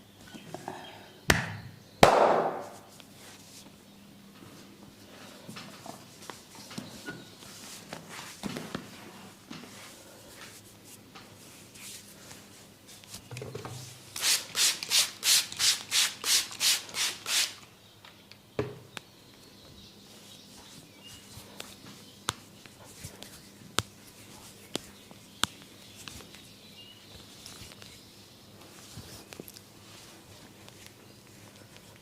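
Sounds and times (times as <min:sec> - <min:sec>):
rubbing strokes of head massage: 0:02.7 - 0:03.8, 0:06.0 - 0:17.6, 0:20.1 - 0:26.4, 0:27.2 - 0:32.0.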